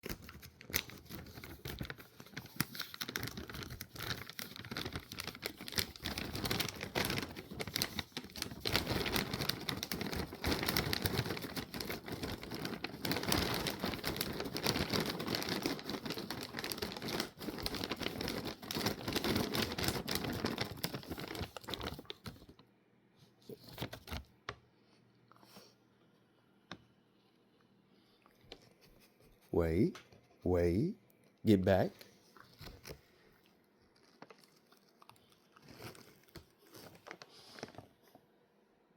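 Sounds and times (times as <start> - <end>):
plastic packaging crinkling: 0.0 - 22.6, 31.9 - 33.2, 33.8 - 38.2.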